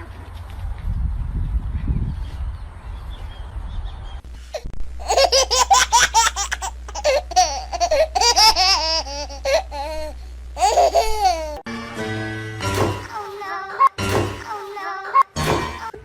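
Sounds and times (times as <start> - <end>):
steady low hum: 4.2 - 11.7
high-pitched pulsed laughter: 4.6 - 11.6.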